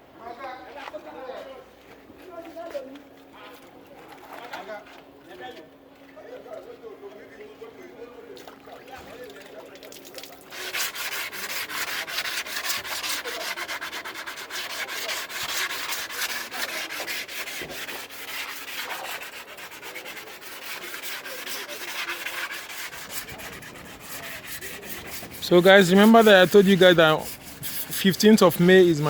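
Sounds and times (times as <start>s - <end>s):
sanding body filler: 10.5s - 29.0s.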